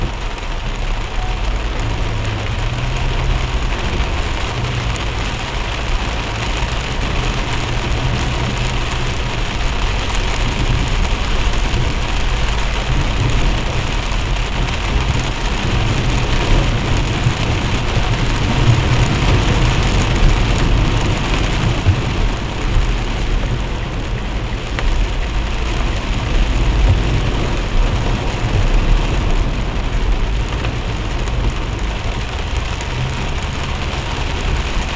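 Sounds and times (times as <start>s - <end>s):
heavy rain pouring: 0.0s - 34.9s.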